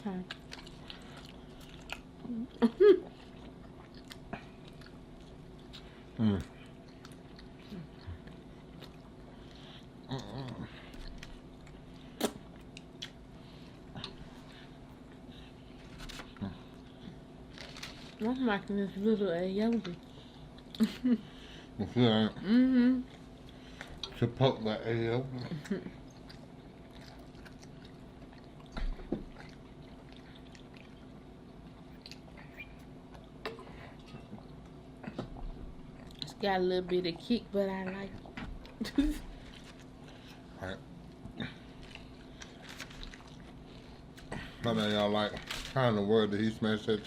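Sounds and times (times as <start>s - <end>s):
close chewing: 0.1s - 2.2s, 3.0s - 13.2s, 26.0s - 35.2s, 41.2s - 45.7s.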